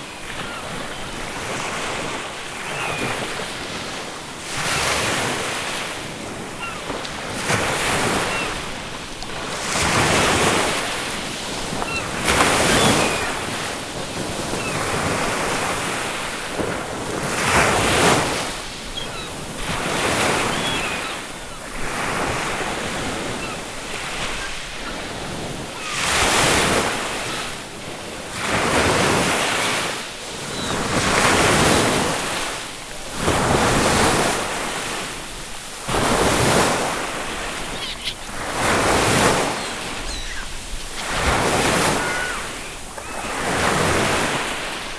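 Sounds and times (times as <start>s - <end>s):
distant seagull calls: 0.0s - 3.7s, 6.4s - 7.0s, 7.9s - 10.9s, 11.6s - 15.7s, 17.8s - 27.6s, 30.3s - 31.8s, 36.0s - 44.9s
ocean waves breaking on shore: 0.0s - 44.9s.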